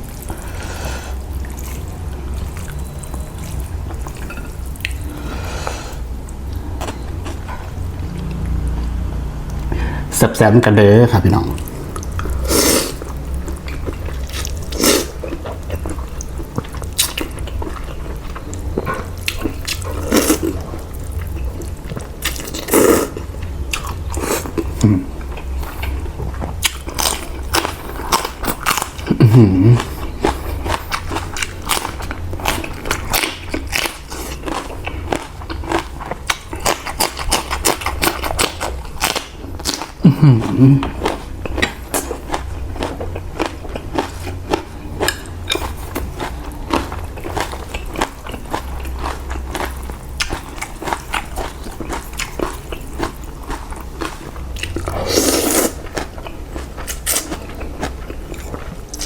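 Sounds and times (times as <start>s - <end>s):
steady low hum: 0.0s - 59.0s
person slurping noodle soup: 12.3s - 13.1s, 14.3s - 15.2s, 22.6s - 23.2s, 54.9s - 55.8s
chewing and mouth smacks: 13.0s - 29.2s, 29.8s - 59.0s.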